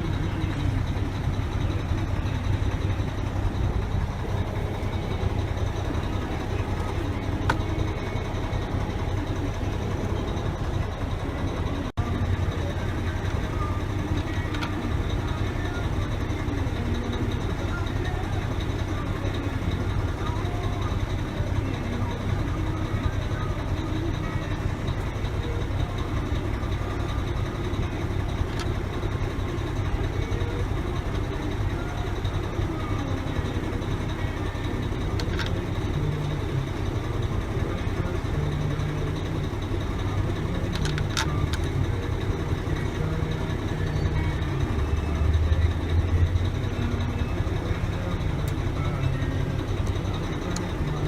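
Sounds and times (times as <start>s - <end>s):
engine idling: 0.0s - 51.0s
sharp clicks: 12.5s - 18.0s, 40.0s - 46.7s.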